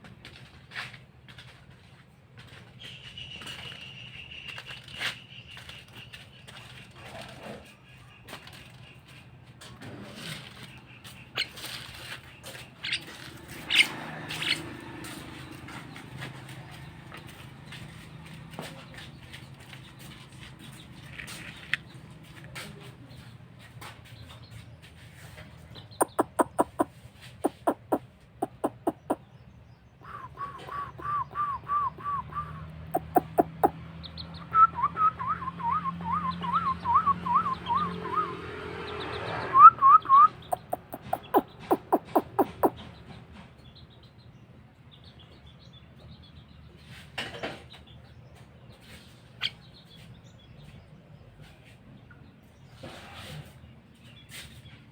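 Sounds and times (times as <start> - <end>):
bird sharp rapid chips: 25.9 - 29.2, 30.0 - 33.8, 40.0 - 42.8
bird wavering whistled notes: 30.0 - 33.7.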